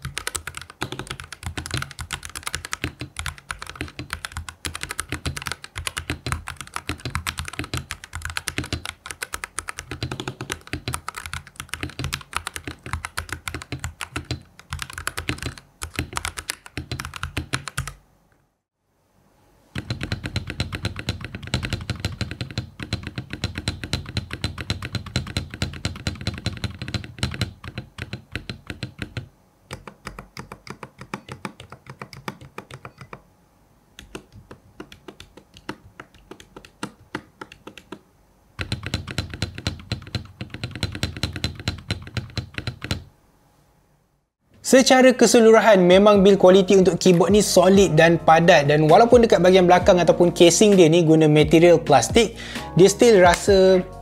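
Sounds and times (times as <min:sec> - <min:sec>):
mechanical keyboard typing: 0:00.0 - 0:18.0, 0:19.8 - 0:33.2, 0:34.0 - 0:38.0, 0:38.6 - 0:43.1.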